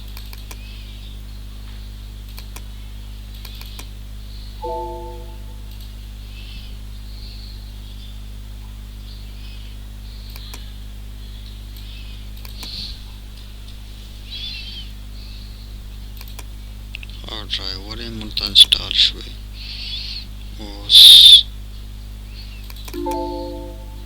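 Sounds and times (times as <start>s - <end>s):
low electrical hum: 0.0s - 24.0s
high bird chirps: 20.9s - 21.4s
sharp clicks: 20.9s - 21.4s.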